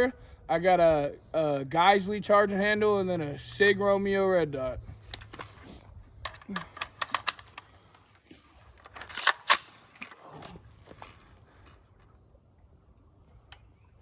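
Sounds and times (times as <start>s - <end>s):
rifle mechanism clicks and clacks: 6.2s - 7.7s, 8.8s - 10.2s.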